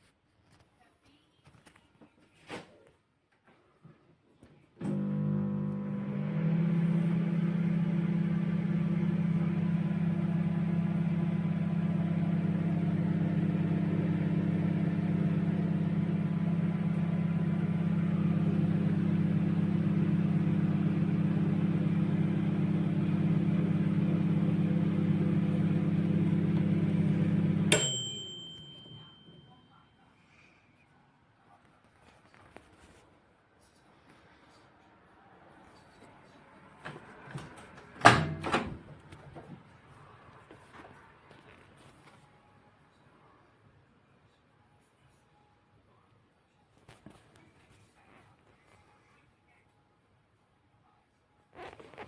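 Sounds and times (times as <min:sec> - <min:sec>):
microwave click: 0:04.8 - 0:29.1, 0:38.0 - 0:39.0
microwave oven humming: 0:04.8 - 0:29.6, 0:37.4 - 0:39.2
microwave timer ding: 0:12.6 - 0:29.7.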